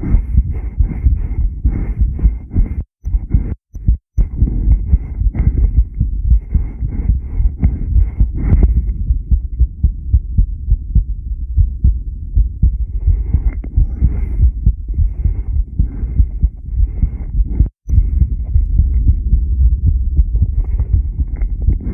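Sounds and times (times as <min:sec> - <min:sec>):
heartbeat thumps: 0:00.0 - 0:21.9.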